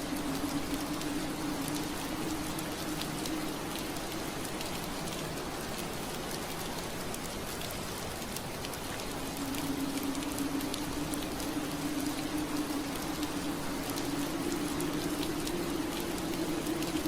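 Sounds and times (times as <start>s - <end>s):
rain on window glass: 0.0s - 17.0s
low steady hum: 8.9s - 17.0s.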